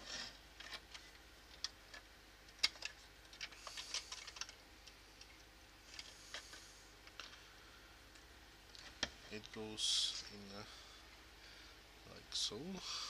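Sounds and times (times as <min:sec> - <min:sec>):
plastic parts clicking and scraping: 0:00.0 - 0:07.4.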